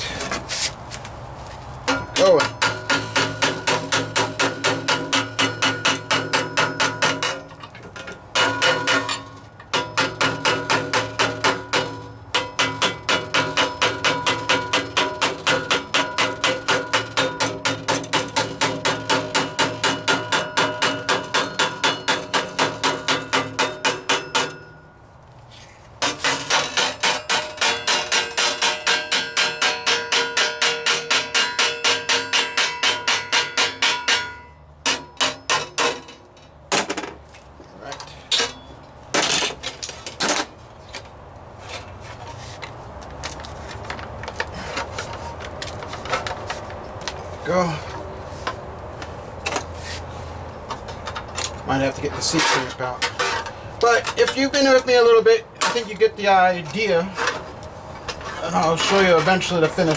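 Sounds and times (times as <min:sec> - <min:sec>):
hammer striking sheet metal: 0:01.9 - 0:07.6, 0:08.3 - 0:24.8, 0:26.0 - 0:36.1.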